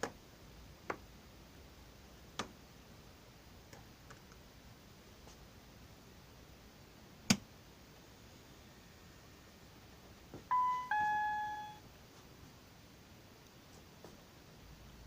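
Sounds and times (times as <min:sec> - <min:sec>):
two-note electronic chime: 0:10.5 - 0:11.8.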